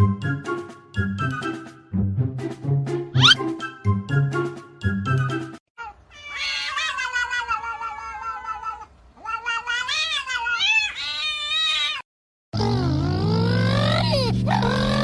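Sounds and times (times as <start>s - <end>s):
cat yowling: 6.1s - 12.0s.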